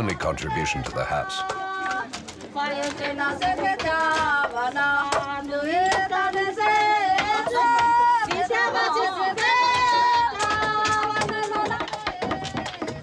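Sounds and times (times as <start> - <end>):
voices singing long notes: 0.0 - 2.0
sharp taps and knocks: 9.3 - 13.0.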